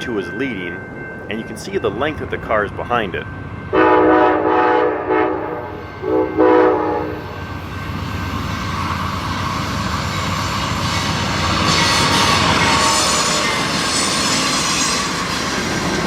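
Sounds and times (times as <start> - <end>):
train rumble and wheel clatter: 0.0 - 16.0
locomotive horn blasts: 3.7 - 7.4.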